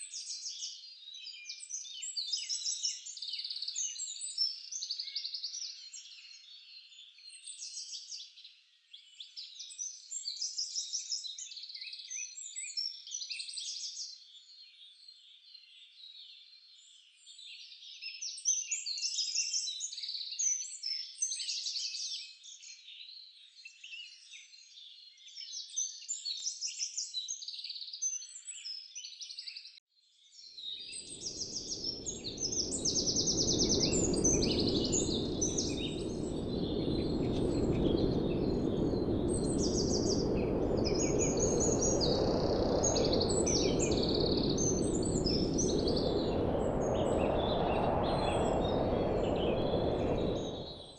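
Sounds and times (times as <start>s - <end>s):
songbirds chirping: 30.6s - 50.9s
low rushing noise: 31.1s - 50.9s.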